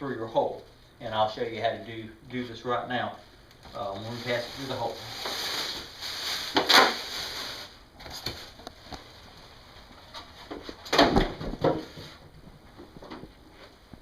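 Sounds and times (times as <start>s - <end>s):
rustling: 3.1s - 10.9s.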